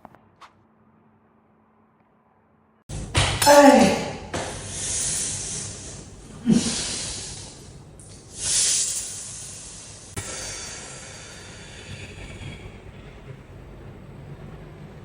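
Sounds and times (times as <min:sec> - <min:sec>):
heavy breathing and hissing exhales: 0:03.5 - 0:13.1.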